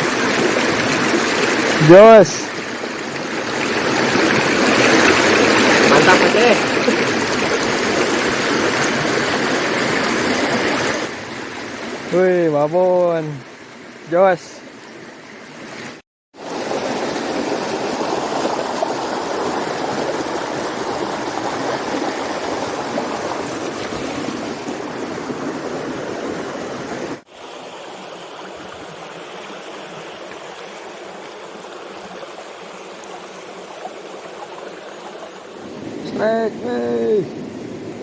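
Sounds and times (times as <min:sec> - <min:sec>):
stream water rushing: 0:00.0 - 0:38.0.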